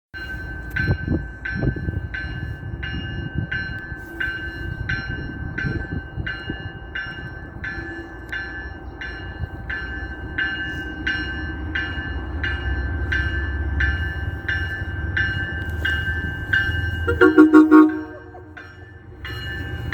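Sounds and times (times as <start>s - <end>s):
railroad warning bell ringing: 0.1s - 19.9s
diesel train rumbling: 0.2s - 19.9s.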